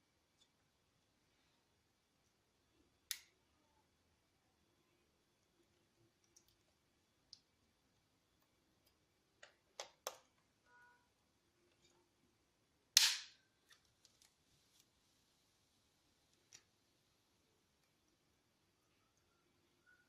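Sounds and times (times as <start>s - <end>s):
loud sharp plastic snap: 13.0s - 13.4s.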